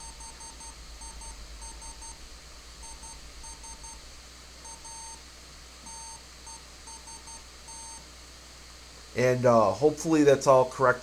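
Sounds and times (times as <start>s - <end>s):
morse code beeps: 5.9s - 8.0s.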